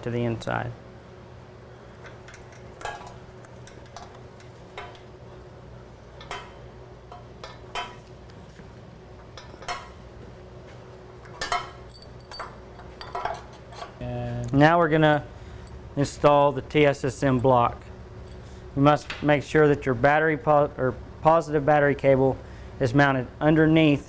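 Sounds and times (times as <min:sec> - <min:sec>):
faint steady hum: 0:00.0 - 0:24.0
metal tools and bolts clinking: 0:02.0 - 0:05.1, 0:09.4 - 0:10.0, 0:11.2 - 0:15.8.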